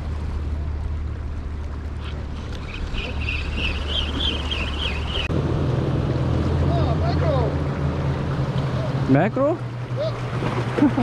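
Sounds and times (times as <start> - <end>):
wind: 0.0 - 11.0
sea surf: 1.4 - 11.0
warbling bird call: 2.0 - 5.3.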